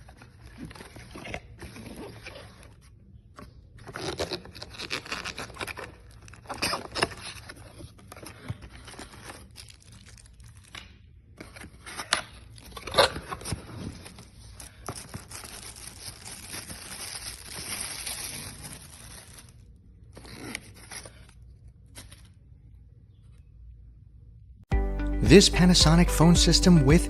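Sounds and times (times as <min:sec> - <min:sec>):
crinkling and tearing: 0:03.8 - 0:22.4.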